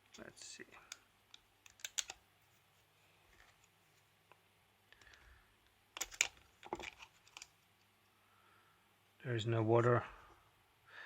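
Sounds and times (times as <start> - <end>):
small tools and plastic parts clicking: 0.9 - 2.2, 6.0 - 7.6.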